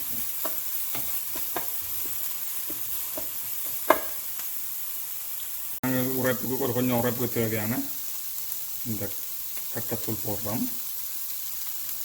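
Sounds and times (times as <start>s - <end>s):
utensil scraping and knocking pan: 0.0s - 4.2s
vegetables sizzling in a pan: 0.0s - 12.0s.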